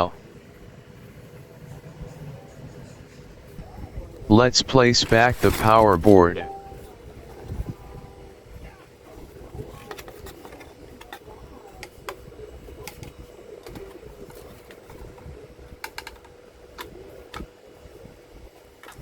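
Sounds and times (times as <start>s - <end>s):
faint steady hum: 3.6s - 6.9s.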